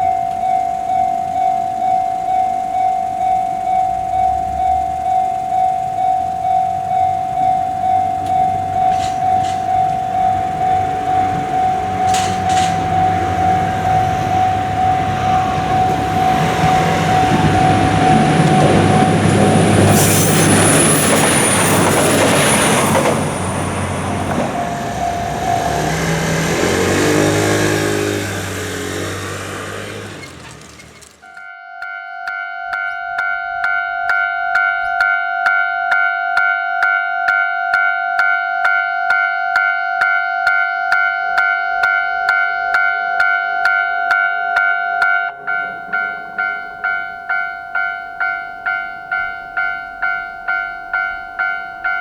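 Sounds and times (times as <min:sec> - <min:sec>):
level crossing bell clanging: 0:00.0 - 0:30.5, 0:31.2 - 0:52.0
high-pitched wheel squeal: 0:00.0 - 0:31.4
train passing rumble: 0:00.0 - 0:31.4, 0:42.7 - 0:52.0.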